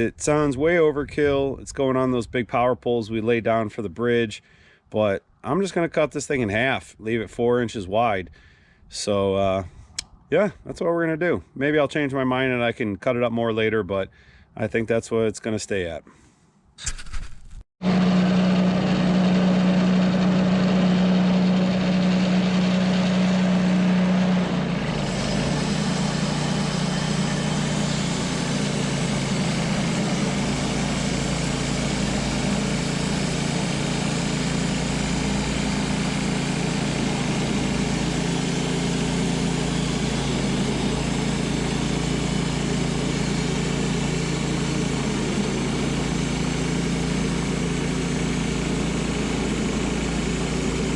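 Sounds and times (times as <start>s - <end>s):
bandsaw mill motor hum: 17.8s - 50.9s.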